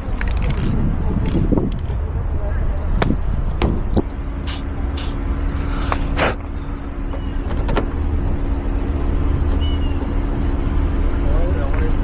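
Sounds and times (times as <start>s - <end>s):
vehicle low hum: 0.0s - 12.0s.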